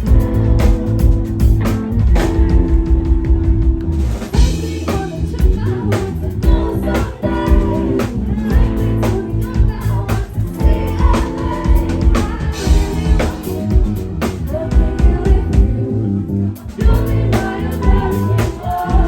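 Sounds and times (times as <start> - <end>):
drum kit beat: 0.0 - 15.9, 16.5 - 19.0
bass guitar: 0.0 - 19.0
guitar: 0.0 - 19.0
person singing: 4.4 - 19.0.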